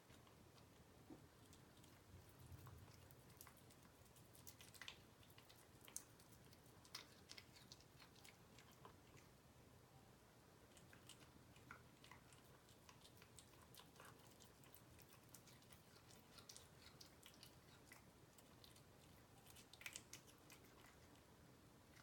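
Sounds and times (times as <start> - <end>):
cat chewing wet clicks: 0.1 - 9.4, 10.6 - 22.0.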